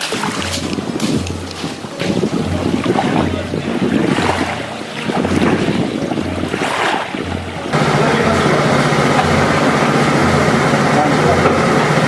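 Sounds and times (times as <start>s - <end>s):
water washing around boat: 0.0s - 12.0s
wind buffeting microphone: 0.0s - 12.0s
low pulsing hum: 0.4s - 12.0s
steady mechanical hum: 7.2s - 12.0s.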